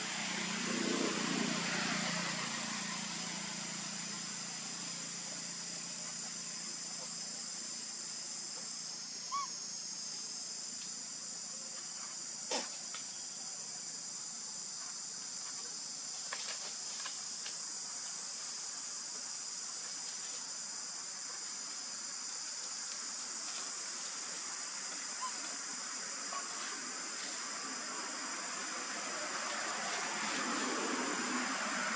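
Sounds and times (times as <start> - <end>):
high-pitched insect chorus: 0.0 - 31.9.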